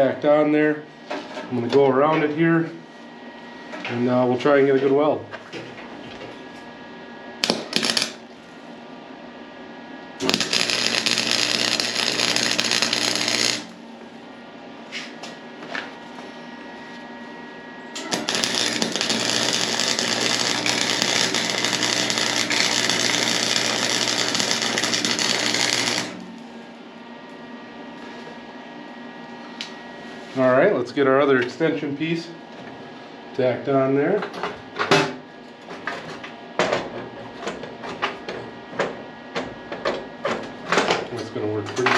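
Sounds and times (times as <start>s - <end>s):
arc welding hiss: 7.4s - 8.2s, 10.2s - 13.8s, 18.0s - 26.4s.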